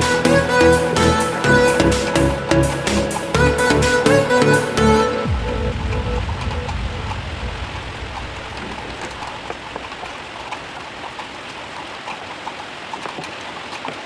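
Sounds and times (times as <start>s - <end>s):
water drips and patters: 5.3s - 14.0s
water hissing like rain: 5.3s - 14.0s.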